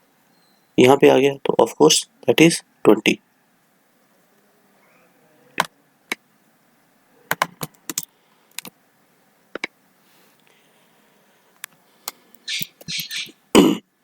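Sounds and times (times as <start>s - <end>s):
sharp clicks and taps: 9.5s - 9.7s.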